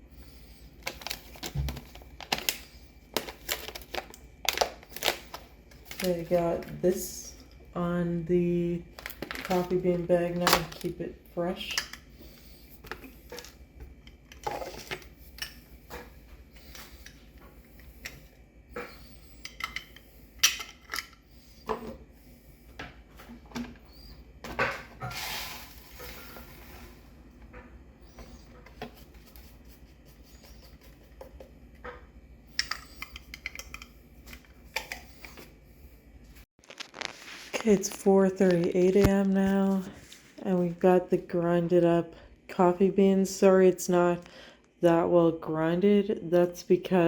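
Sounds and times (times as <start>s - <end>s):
kitchen items clinking and knocking: 14.3s - 16.1s.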